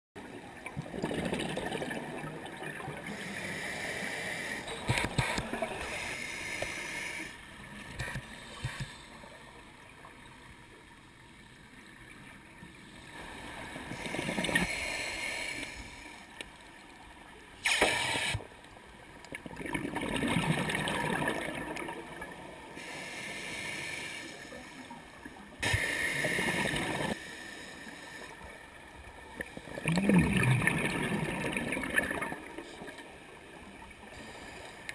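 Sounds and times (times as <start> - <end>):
bubbly gurgling exhaled air: 0.6 - 3.1, 19.3 - 22.4, 29.4 - 32.8
regulator inhalation hiss: 3.1 - 7.5, 13.3 - 16.3, 17.6 - 18.6, 22.8 - 25.0, 25.6 - 28.5.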